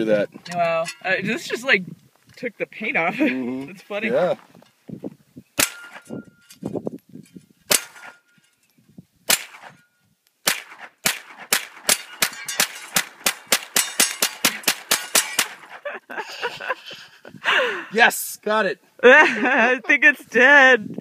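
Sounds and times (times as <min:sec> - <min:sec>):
gunshots: 0:05.6 - 0:06.1, 0:07.7 - 0:08.2, 0:09.3 - 0:09.8, 0:10.4 - 0:15.8.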